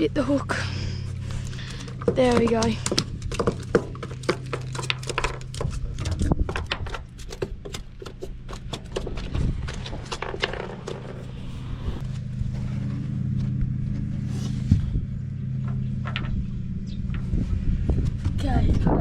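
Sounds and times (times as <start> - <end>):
low engine hum: 0.0 - 19.0
scrape: 10.8 - 13.2, 14.2 - 15.0.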